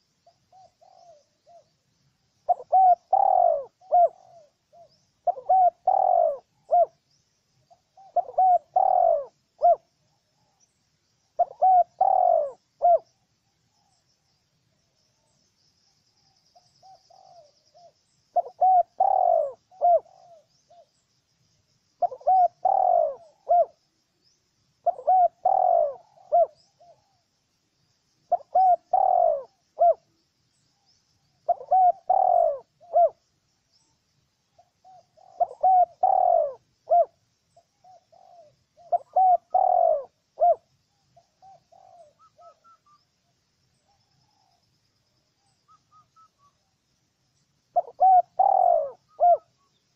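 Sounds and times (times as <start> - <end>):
dove cooing: 0.0 - 1.7, 2.5 - 7.0, 7.7 - 9.9, 11.3 - 13.2, 16.5 - 20.9, 22.0 - 23.8, 24.8 - 27.2, 28.3 - 30.2, 31.4 - 33.2, 34.6 - 43.0, 47.7 - 49.8.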